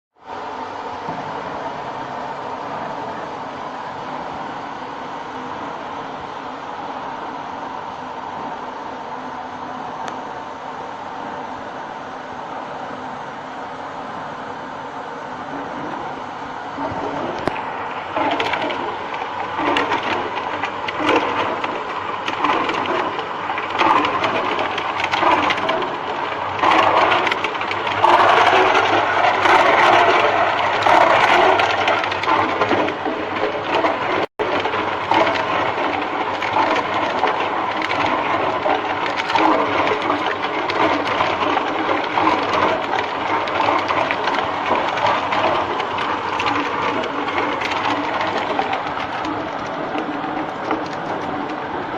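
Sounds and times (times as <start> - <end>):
ice machine clattering: 16.8 - 51.9.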